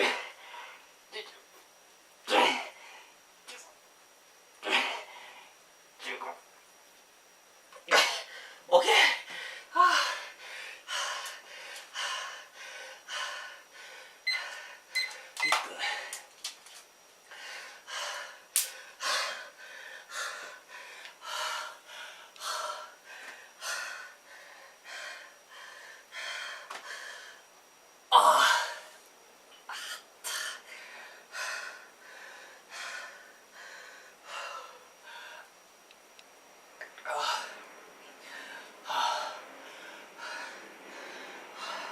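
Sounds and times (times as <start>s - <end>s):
man panting hard: 8.2s - 14.9s, 17.3s - 27.4s, 29.7s - 35.5s, 38.2s - 41.9s.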